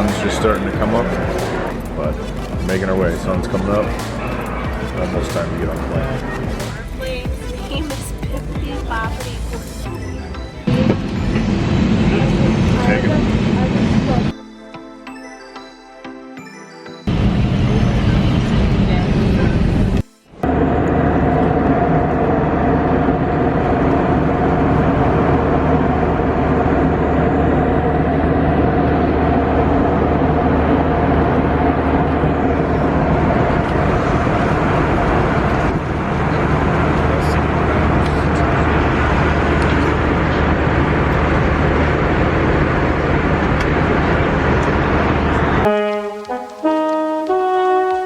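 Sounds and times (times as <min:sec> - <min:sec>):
airliner cabin engine drone: 0:00.0 - 0:14.4, 0:17.1 - 0:48.0
constant low hum: 0:17.1 - 0:48.0.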